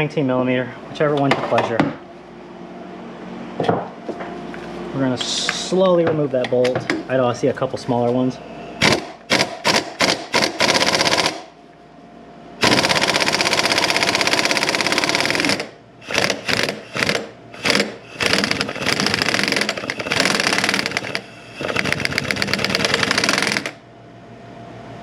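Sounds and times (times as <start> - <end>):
impact wrench hammering: 8.8 - 11.4, 12.6 - 23.8.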